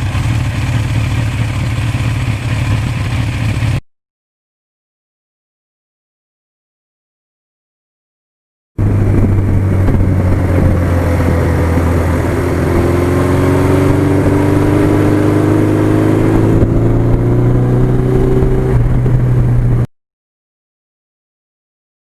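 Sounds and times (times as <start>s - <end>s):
motorcycle engine running: 0.0s - 3.8s, 8.8s - 19.9s.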